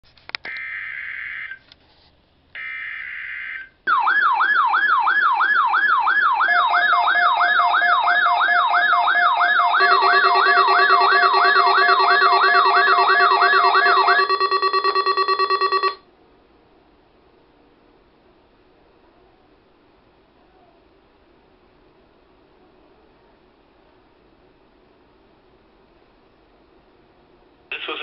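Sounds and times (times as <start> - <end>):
siren-like alarm wail: 2.6 - 16.0
steady beeping alarm tones: 6.9 - 16.0.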